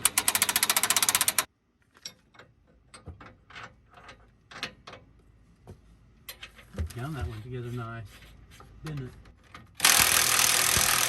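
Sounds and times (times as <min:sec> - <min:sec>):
ratchet wrench clicking: 0:00.0 - 0:01.5, 0:09.8 - 0:11.0.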